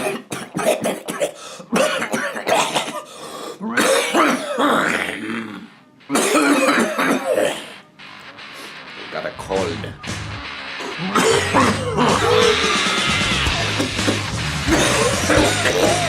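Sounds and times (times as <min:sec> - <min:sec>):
man coughing: 0:00.0 - 0:05.0, 0:06.1 - 0:07.7, 0:11.1 - 0:12.4, 0:13.8 - 0:16.0.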